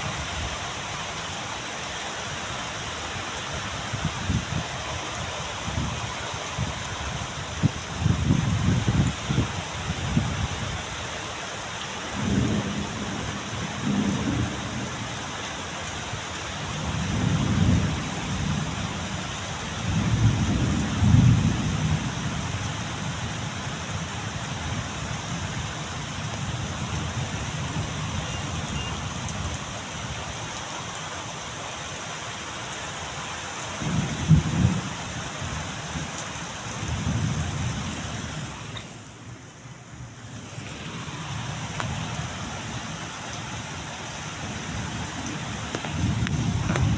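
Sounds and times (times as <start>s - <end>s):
heavy rain falling: 0.0s - 46.9s
low rumbles of thunder: 12.2s - 15.0s, 16.7s - 18.9s, 19.8s - 23.4s, 33.8s - 36.2s, 44.5s - 46.9s.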